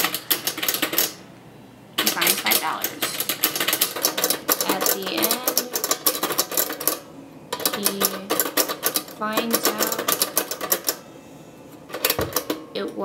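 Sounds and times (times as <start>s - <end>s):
typewriter keys clacking: 0.0s - 1.2s, 2.0s - 7.0s, 7.6s - 11.0s.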